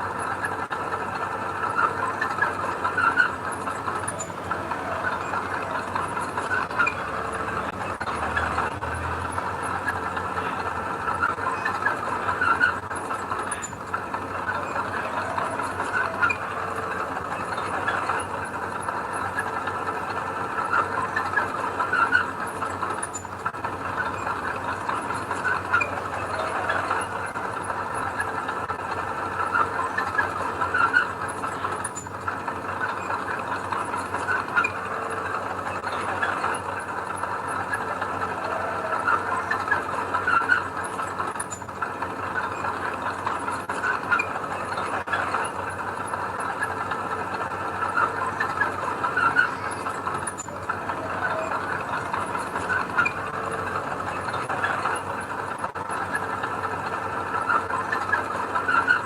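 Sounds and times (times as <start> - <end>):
bulldozer engine running: 0.0 - 59.0
steel tracks clattering: 0.0 - 59.0
metallic squeaks: 1.7 - 19.6, 29.4 - 32.2, 32.8 - 41.8, 47.8 - 55.3.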